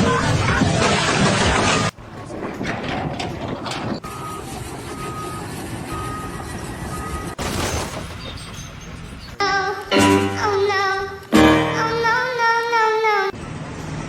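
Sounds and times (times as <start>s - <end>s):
engine and machinery noise: 0.0s - 14.0s
reversing alarm beeping: 4.0s - 7.4s.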